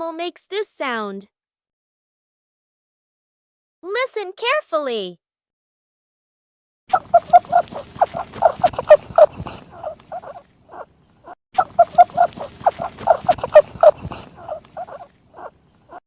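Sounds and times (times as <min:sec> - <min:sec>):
rabbit calling: 0:06.9 - 0:16.0.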